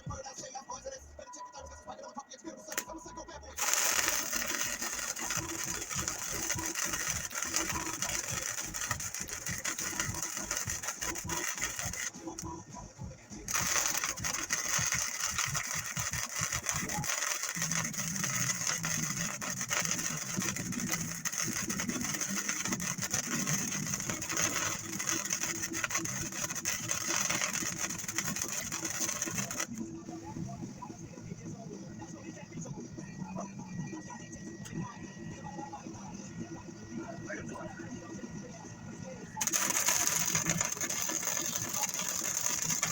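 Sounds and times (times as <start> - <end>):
welder crackle and hiss: 2.7 - 3.0, 3.6 - 30.9, 39.4 - 42.9.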